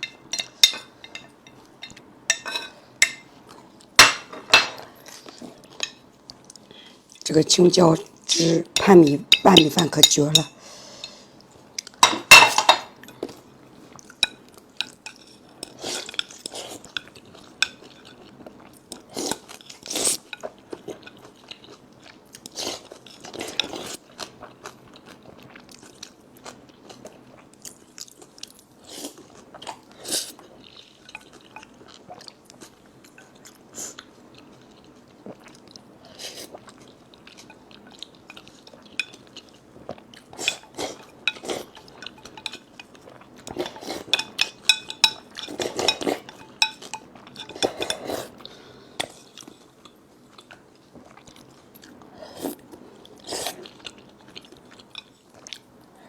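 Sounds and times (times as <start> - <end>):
utensils clinking against bowl: 0.0 - 3.3, 4.0 - 4.9, 8.4 - 11.2, 11.8 - 13.4, 14.2 - 18.2, 23.5 - 23.8, 38.3 - 39.3, 40.4 - 48.2
person chewing food: 13.0 - 55.7.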